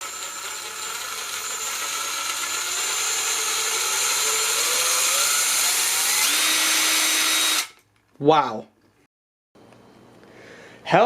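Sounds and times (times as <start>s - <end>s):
power tool motor whining: 0.0s - 7.8s.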